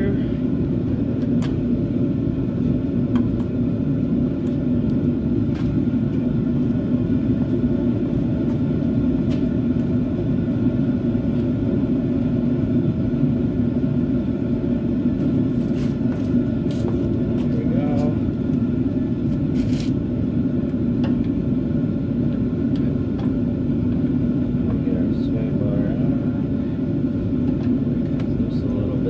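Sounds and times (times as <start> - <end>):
machinery rumbling drone: 0.0 - 1.2, 21.3 - 29.0.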